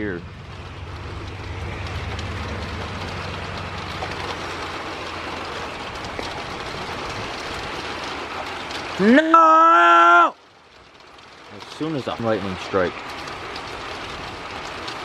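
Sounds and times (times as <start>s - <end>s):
gusty wind: 0.0s - 9.0s
low thunder rumble: 0.0s - 9.1s
rain: 0.0s - 15.0s.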